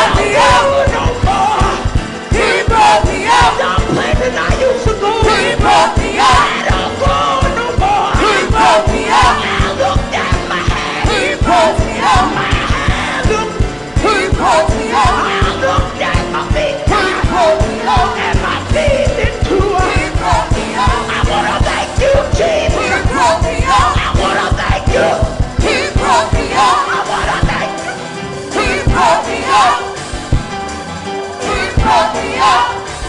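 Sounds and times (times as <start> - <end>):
fast drum beat: 0.0 - 33.0
gospel choir singing: 0.0 - 33.0
live band playing: 0.0 - 33.0.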